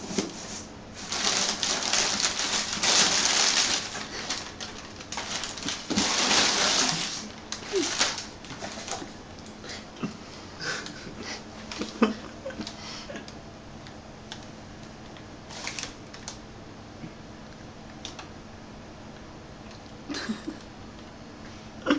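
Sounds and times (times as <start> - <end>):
faint steady hum: 0.0 - 21.9
packaging rustling and clicking: 1.0 - 9.6, 15.0 - 16.4.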